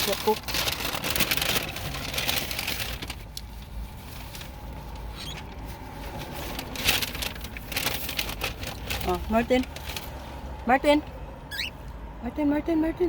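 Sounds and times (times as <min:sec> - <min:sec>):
car interior rumble: 0:00.0 - 0:13.0.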